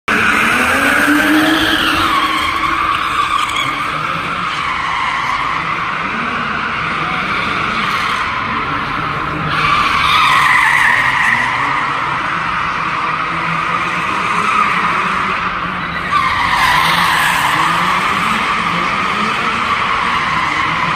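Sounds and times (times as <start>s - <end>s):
car engine revving: 0.0s - 20.9s
tyres squealing: 0.2s - 5.8s.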